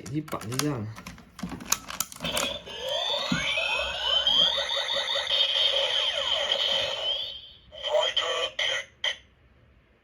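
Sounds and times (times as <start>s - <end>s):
electronic toy sound effect: 2.2s - 9.2s.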